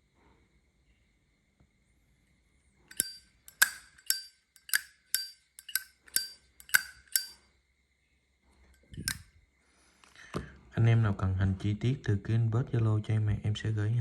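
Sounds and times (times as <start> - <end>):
lighter lid clinking open and shut: 2.9 - 7.4, 9.0 - 9.3.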